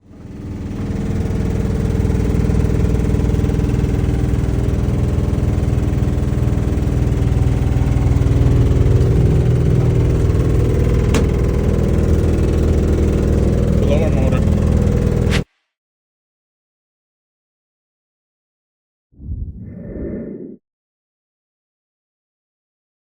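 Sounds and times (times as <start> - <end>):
furnace mechanical drone: 0.0 - 15.4.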